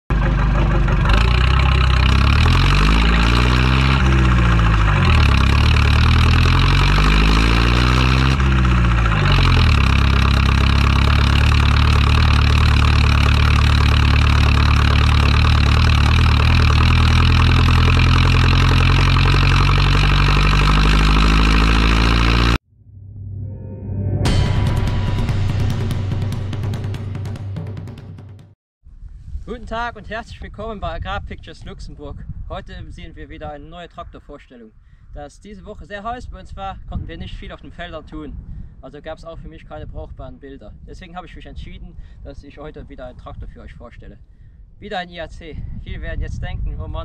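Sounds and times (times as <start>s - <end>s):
tractor diesel engine running: 0.1s - 22.6s.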